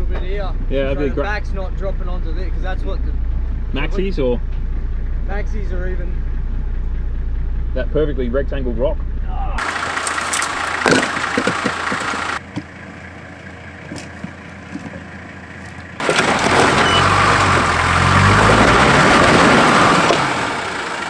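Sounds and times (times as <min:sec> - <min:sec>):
off-road vehicle engine under load: 0:00.0 - 0:21.0
rocks crunching under tyres: 0:09.6 - 0:21.0.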